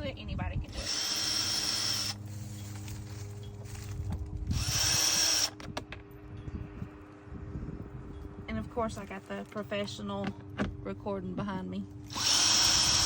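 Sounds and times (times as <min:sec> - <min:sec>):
power drill spinning: 0:00.7 - 0:02.3, 0:04.5 - 0:05.6, 0:12.1 - 0:13.0.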